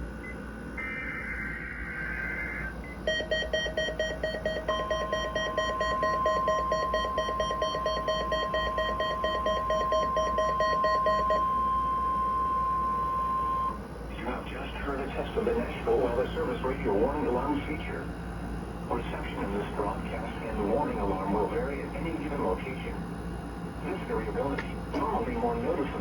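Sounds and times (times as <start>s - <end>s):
fast pulsing electronic beep: 0.8s - 13.7s
steady alert tone: 0.8s - 13.7s.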